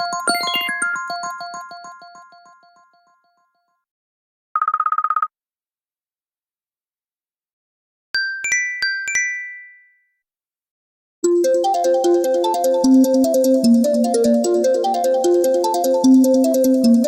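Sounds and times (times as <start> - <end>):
electronic ringtone melody: 0.0 - 2.6
chime notes: 0.3 - 2.3.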